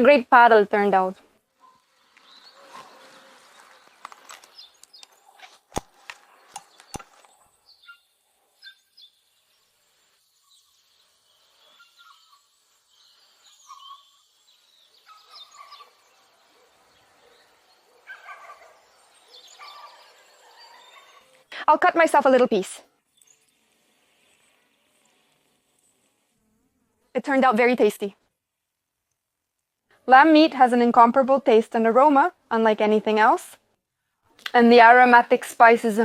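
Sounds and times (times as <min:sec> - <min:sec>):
faint bird chirps: 0:06.3 - 0:21.5.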